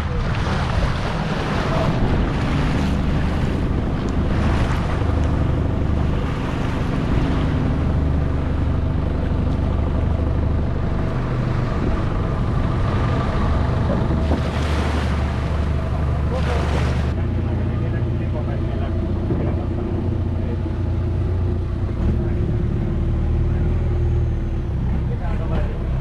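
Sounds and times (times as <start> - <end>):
wind on microphone: 0.0 - 17.2
boat engine running: 0.0 - 26.0
water splashing against hull: 0.0 - 26.0.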